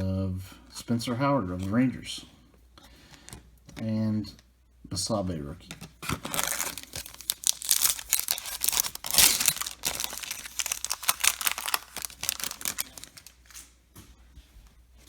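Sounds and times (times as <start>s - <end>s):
wrapper being torn and crinkled: 6.0s - 13.7s.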